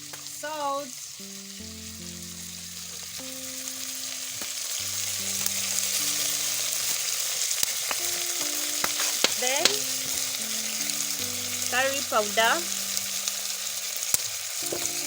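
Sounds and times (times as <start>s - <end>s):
soft background music: 0.0s - 15.0s
vegetables sizzling in a pan: 0.0s - 15.0s.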